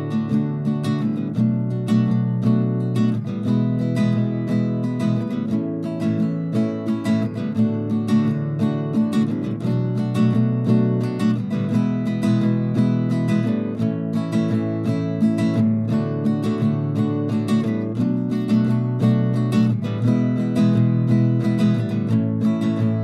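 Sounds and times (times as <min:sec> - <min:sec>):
acoustic guitar strumming: 0:00.0 - 0:23.0.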